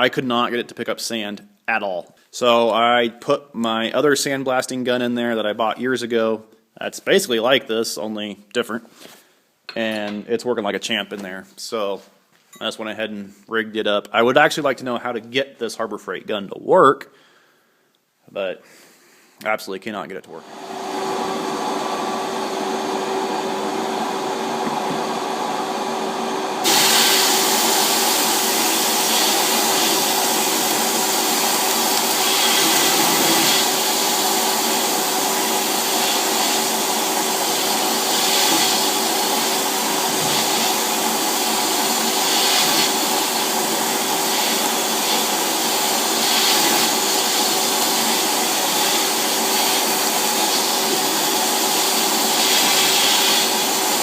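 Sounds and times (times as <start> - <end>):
vacuum motor drone: 20.4 - 45.4
sandblasting gun hissing: 26.6 - 54.0.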